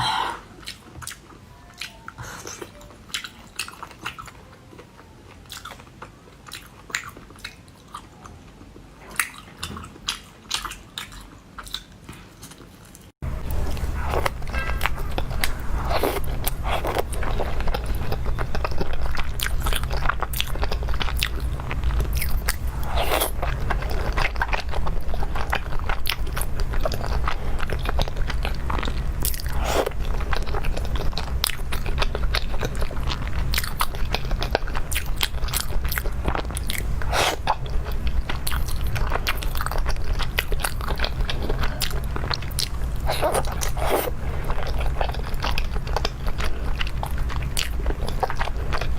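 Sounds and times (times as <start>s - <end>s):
person crunching and chewing food: 0.0s - 48.9s
steady low hum: 13.2s - 48.9s.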